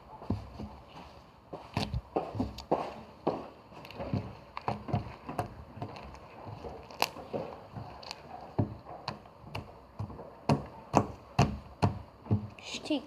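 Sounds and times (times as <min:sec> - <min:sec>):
slime squishing with wet clicks: 0:03.7 - 0:12.0.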